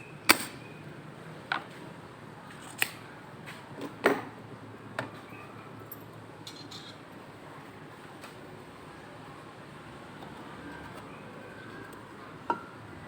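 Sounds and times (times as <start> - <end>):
sharp clicks of hand tools: 0.3 - 0.6.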